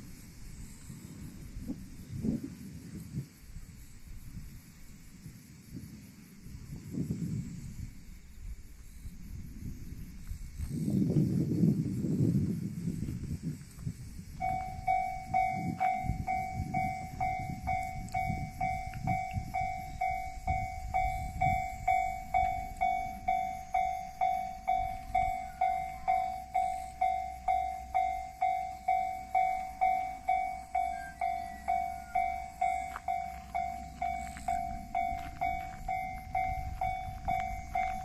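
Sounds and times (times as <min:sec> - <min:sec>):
low rumble: 0:14.0 - 0:38.0
level-crossing warning bell ringing: 0:14.4 - 0:38.0.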